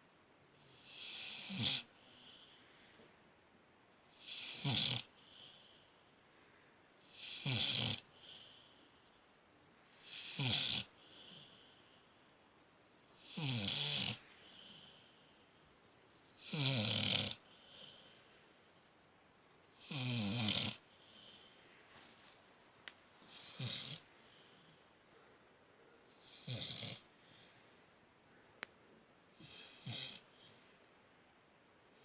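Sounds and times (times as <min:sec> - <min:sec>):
dog snoring: 0:00.6 - 0:02.6, 0:04.1 - 0:05.8, 0:07.0 - 0:08.8, 0:10.0 - 0:11.8, 0:13.1 - 0:15.3, 0:16.4 - 0:18.2, 0:19.7 - 0:21.5, 0:23.2 - 0:24.8, 0:26.1 - 0:27.4, 0:29.3 - 0:30.5.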